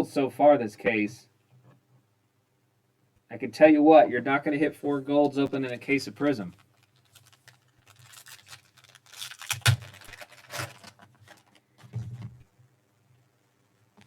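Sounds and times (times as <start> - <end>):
cards clicking and rustling: 5.6 - 12.3.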